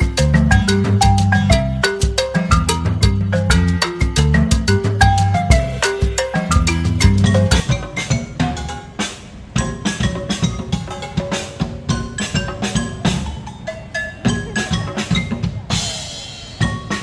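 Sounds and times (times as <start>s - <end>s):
steady drum beat: 0.0s - 13.4s
mallet percussion notes: 0.0s - 17.0s.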